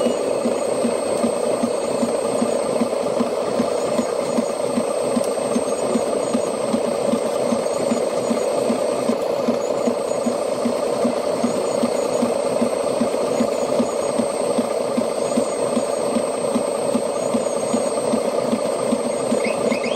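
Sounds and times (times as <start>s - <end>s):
faint high whine: 0.0s - 2.9s, 13.0s - 19.9s
mechanical hum with pulsing: 0.0s - 19.9s.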